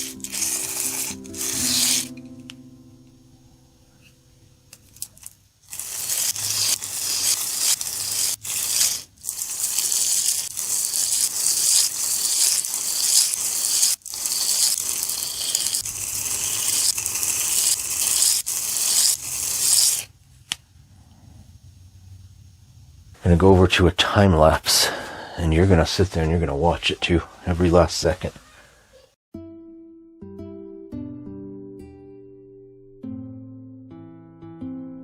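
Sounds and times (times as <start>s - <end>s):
knife scraping on sharpener: 0.0s - 2.2s, 5.0s - 20.1s.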